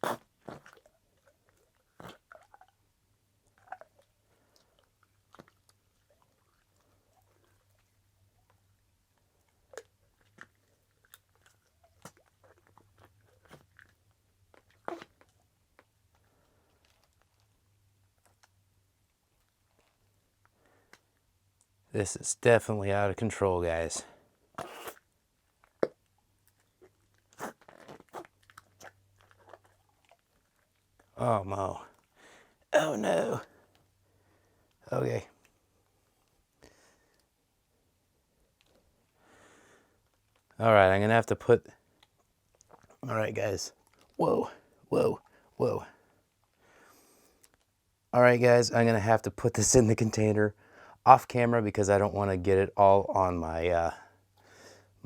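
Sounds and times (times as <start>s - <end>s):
putty squelching and crackling: 0.0s - 8.6s, 9.2s - 21.7s, 24.6s - 32.2s.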